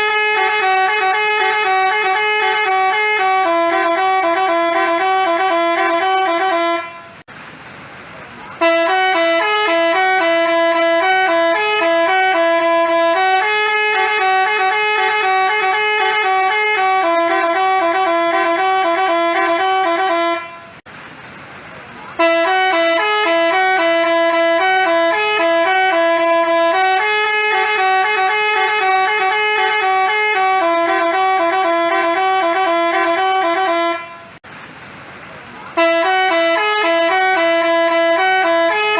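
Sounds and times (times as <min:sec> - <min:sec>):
musical bus horn tune: 0:00.0 - 0:07.3, 0:08.6 - 0:20.9, 0:22.2 - 0:34.4, 0:35.7 - 0:38.9.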